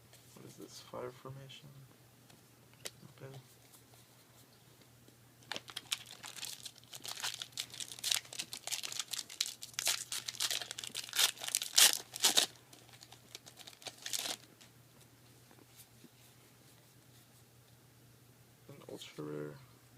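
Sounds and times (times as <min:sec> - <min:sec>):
foil wrapper crinkling and tearing: 0:05.4 - 0:14.5.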